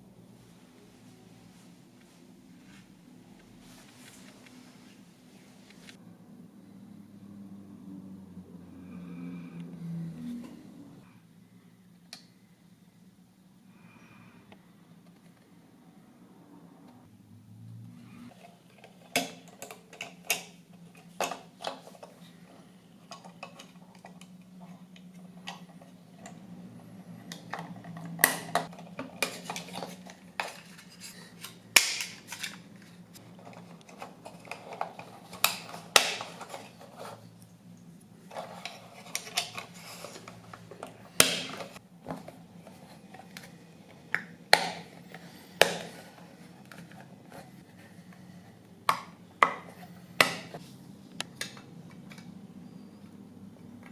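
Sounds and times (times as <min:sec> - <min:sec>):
small tools clicking and scraping: 0:27.2 - 0:37.5, 0:38.3 - 0:41.8.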